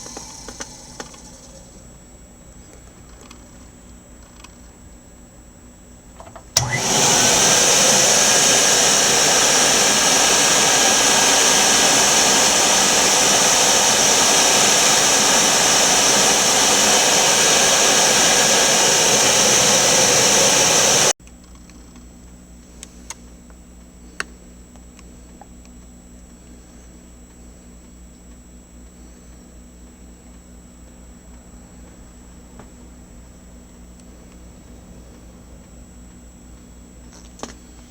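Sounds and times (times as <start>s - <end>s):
vacuum cleaner whining: 0.0s - 1.8s, 6.6s - 21.2s.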